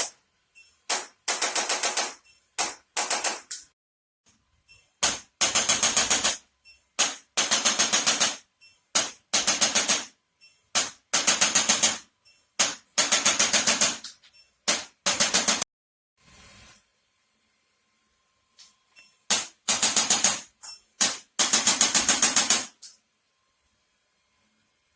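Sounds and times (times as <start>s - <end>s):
rapid mechanical clicking: 0.9s - 3.7s, 5.0s - 6.4s, 7.0s - 10.1s, 10.8s - 12.0s, 12.6s - 14.1s, 14.7s - 15.6s, 19.3s - 23.0s.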